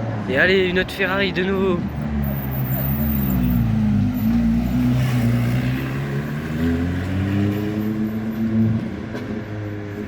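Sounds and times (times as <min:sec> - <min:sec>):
car engine accelerating: 0:02.0 - 0:09.4.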